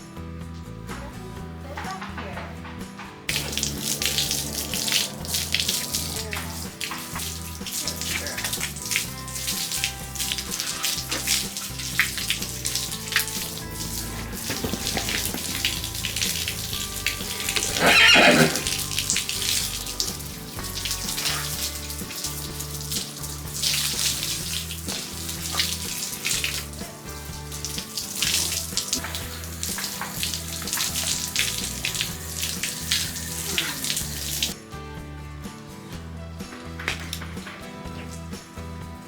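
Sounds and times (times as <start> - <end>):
water spraying and splashing: 3.3 - 34.6
horse whinny: 17.3 - 18.9.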